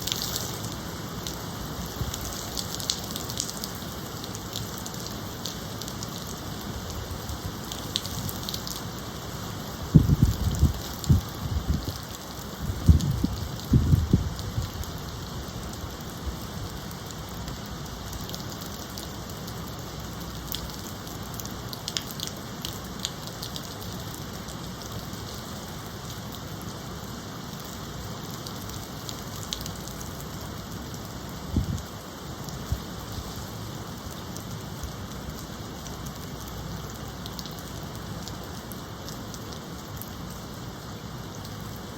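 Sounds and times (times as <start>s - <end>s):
low gusts of wind: 0.0s - 18.6s, 24.1s - 36.0s
heavy rain falling: 0.0s - 41.9s
sharp drips close by: 0.0s - 41.9s.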